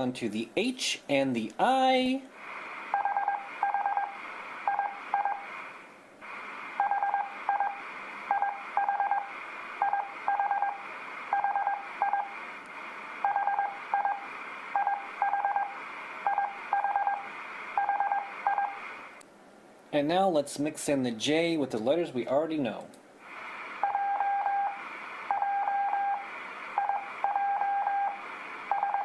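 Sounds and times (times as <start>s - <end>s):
steady hiss: 0.0s - 25.4s, 26.1s - 27.4s, 28.0s - 28.8s
morse code beeps: 2.9s - 5.5s, 6.8s - 12.3s, 13.2s - 14.2s, 14.8s - 18.8s, 23.8s - 26.2s, 26.8s - 29.0s.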